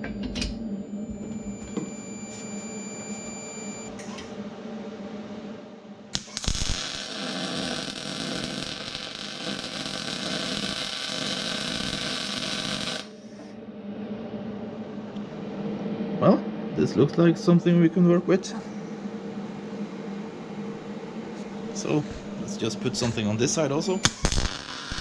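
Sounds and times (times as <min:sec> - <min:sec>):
steady hum: 0:00.0 - 0:25.0
welding arc crackling: 0:06.2 - 0:13.1, 0:24.0 - 0:25.0.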